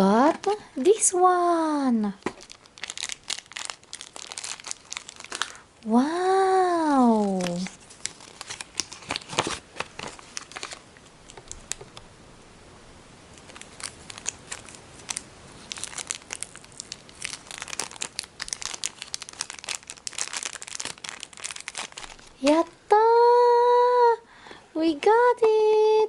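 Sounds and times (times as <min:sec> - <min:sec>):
plastic packaging crinkling: 0:02.1 - 0:12.0, 0:13.3 - 0:22.8.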